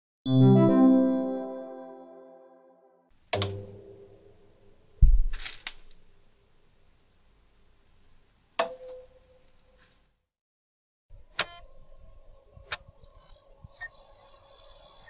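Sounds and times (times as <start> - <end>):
computer hardware clicking: 3.4 - 3.8
low thump: 5.0 - 5.4.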